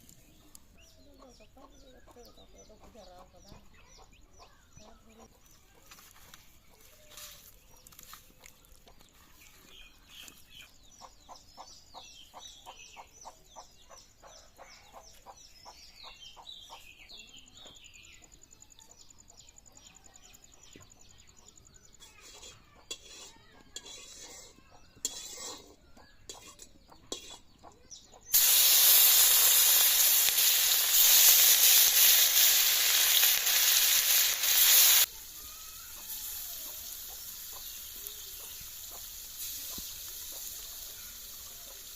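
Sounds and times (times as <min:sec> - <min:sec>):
oil sizzling in a pan: 0:28.3 - 0:41.9.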